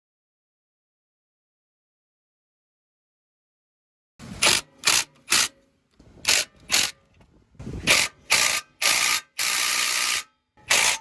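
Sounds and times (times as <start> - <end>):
ratchet wrench on bolts: 4.2 - 5.6, 6.2 - 7.1, 7.8 - 11.0.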